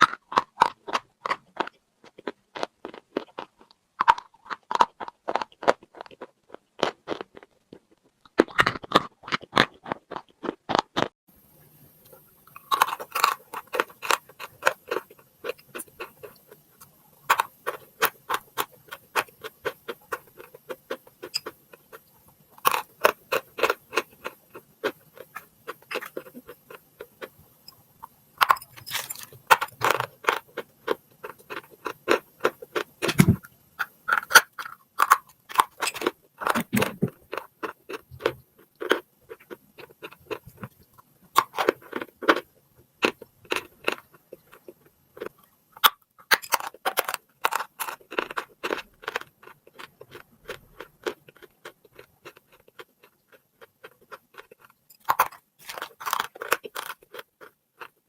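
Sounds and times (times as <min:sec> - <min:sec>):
chalk crunching in mouth: 0:00.0 - 0:11.1.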